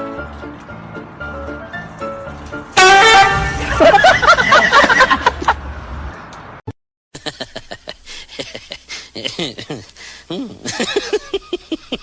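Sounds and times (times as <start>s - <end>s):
person laughing: 3.6s - 5.6s, 7.2s - 12.0s.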